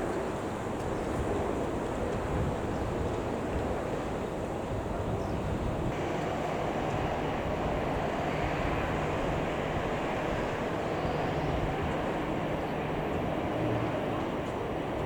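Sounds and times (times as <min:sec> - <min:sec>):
jet engines rushing: 0:05.9 - 0:15.0.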